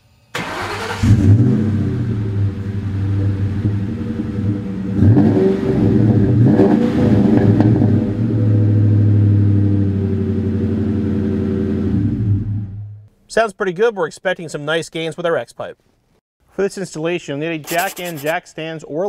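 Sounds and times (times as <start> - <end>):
car engine revving: 0.4 - 12.8.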